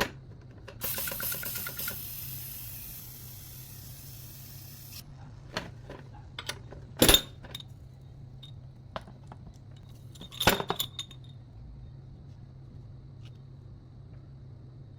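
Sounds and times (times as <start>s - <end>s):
steady low hum: 0.0s - 14.9s
metallic clinks and knocks: 8.4s - 11.4s
metallic clatters: 9.7s - 11.4s.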